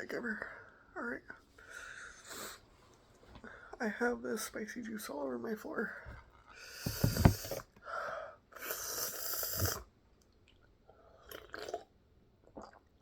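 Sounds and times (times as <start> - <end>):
loud thump: 6.9 - 7.6.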